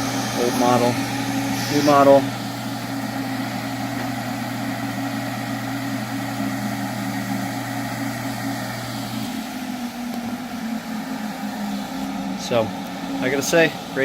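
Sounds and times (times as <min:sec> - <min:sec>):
rushing air: 0:00.0 - 0:05.4
fan motor hum: 0:00.0 - 0:14.0.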